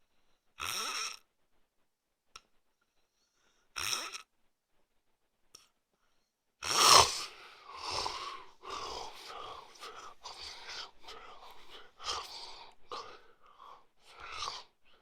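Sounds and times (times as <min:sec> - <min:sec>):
loud snort: 0:00.6 - 0:01.2, 0:03.8 - 0:04.2, 0:06.6 - 0:14.7
man snoring: 0:06.6 - 0:14.7.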